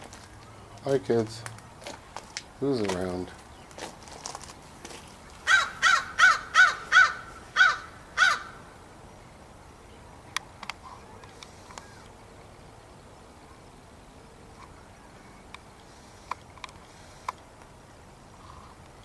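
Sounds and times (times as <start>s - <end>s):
crow cawing: 5.4s - 8.7s
faint sharp clicks: 10.3s - 12.2s, 15.5s - 17.7s.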